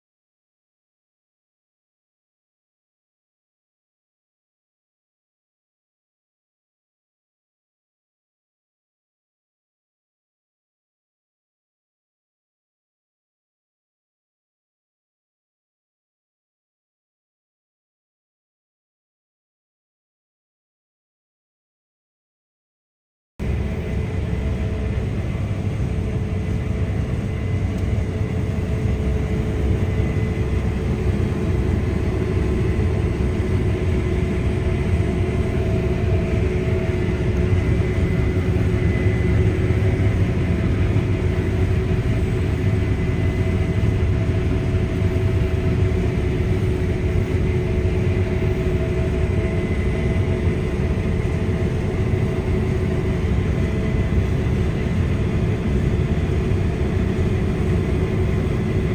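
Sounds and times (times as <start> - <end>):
combine harvester engine drone: 23.4 - 58.9.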